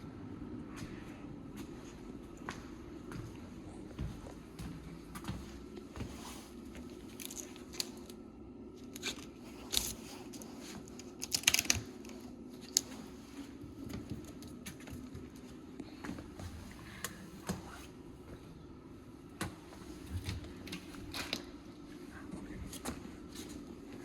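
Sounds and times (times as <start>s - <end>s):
steady low hum: 0.0s - 24.0s
crinkling rustles: 6.0s - 8.2s, 8.8s - 17.1s.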